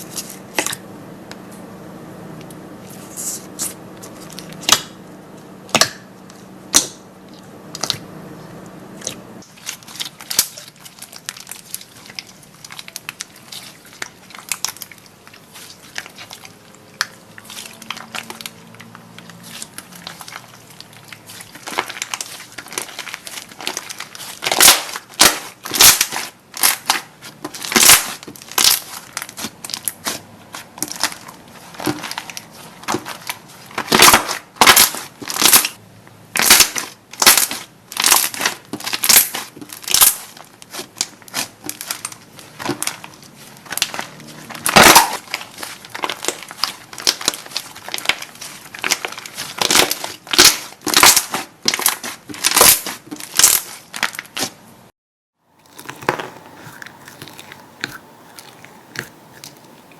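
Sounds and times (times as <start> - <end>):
slime crackling pops: 21.6 - 30.2.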